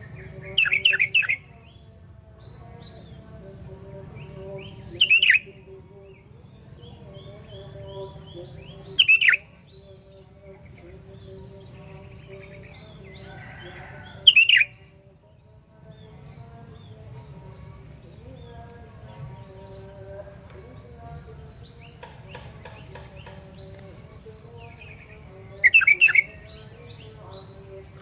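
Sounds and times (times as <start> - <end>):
faint bird chirping: 0.0 - 28.0
bird shrill calls: 0.5 - 1.5, 5.0 - 5.5, 8.9 - 9.7, 13.2 - 14.8, 25.6 - 26.8.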